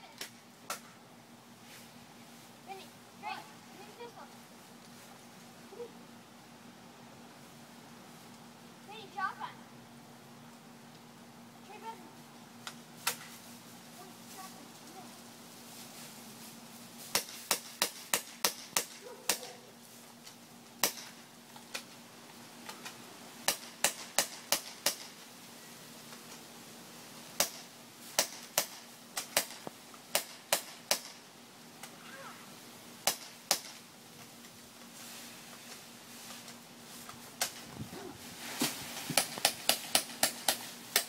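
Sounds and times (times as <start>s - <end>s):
airsoft gun shots: 33.0s - 33.8s.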